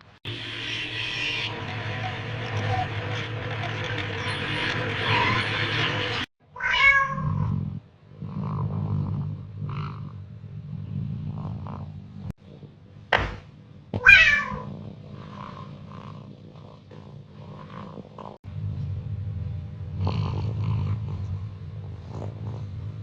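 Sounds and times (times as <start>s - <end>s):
cat meowing: 6.6s - 7.5s, 14.0s - 14.7s.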